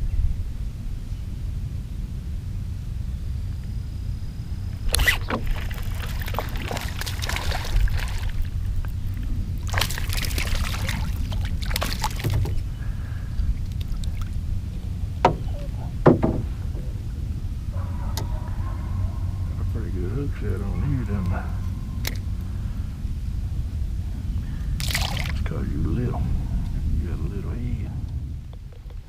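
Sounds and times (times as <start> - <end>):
wind rumble on microphone: 0.0 - 29.0
fish splashing in water: 4.8 - 14.4, 24.8 - 25.5.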